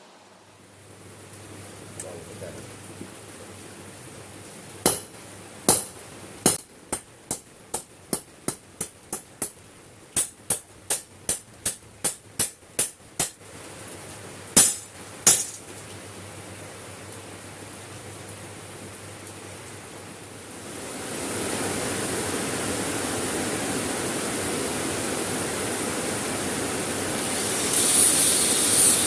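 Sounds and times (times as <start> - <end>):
hammer striking metal: 4.9 - 9.6, 14.6 - 15.6.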